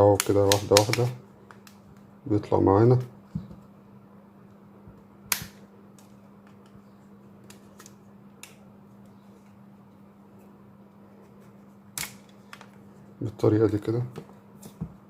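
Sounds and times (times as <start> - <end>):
faint steady hum: 0.0 - 15.0
plastic clips snapping: 0.2 - 1.8, 12.0 - 12.8.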